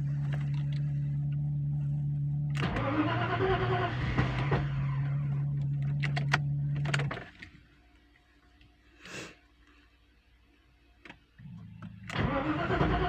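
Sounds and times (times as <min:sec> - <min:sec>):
car engine running: 0:00.0 - 0:07.4.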